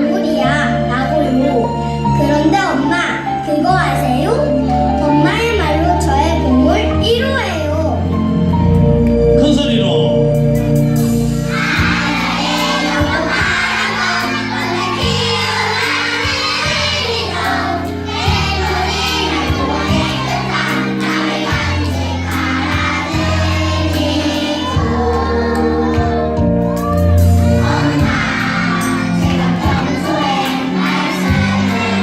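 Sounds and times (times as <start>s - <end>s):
children singing together: 11.4s - 32.0s.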